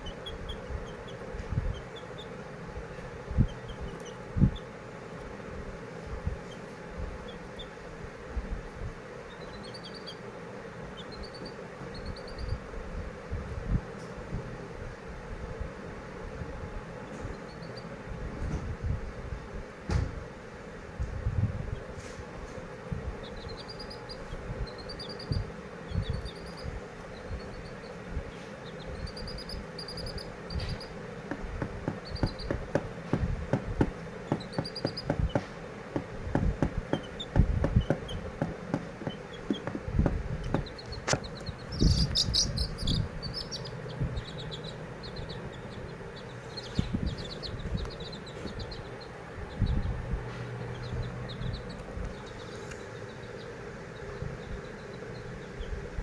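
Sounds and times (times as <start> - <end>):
small bird chirping: 0.0 - 4.8, 6.2 - 7.9, 8.6 - 12.7, 17.1 - 18.0, 23.1 - 56.0
handling knocks and thumps: 31.3 - 41.3.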